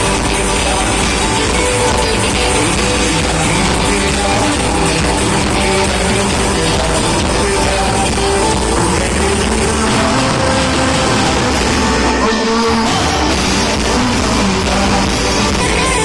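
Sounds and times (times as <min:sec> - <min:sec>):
heavy bass: 0:00.0 - 0:16.0
live band playing amplified music: 0:00.0 - 0:16.0
sustained guitar or keyboard notes: 0:00.0 - 0:16.0.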